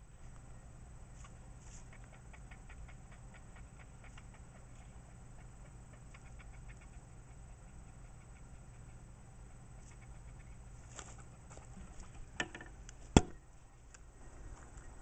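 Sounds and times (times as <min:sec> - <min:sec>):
gerbil chattering clicks: 0:01.2 - 0:09.1.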